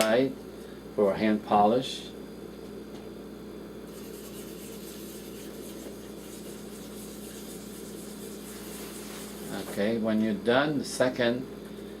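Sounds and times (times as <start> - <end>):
steady low hum: 0.0 - 12.0
soft rubbing strokes on polishing film: 3.9 - 9.9.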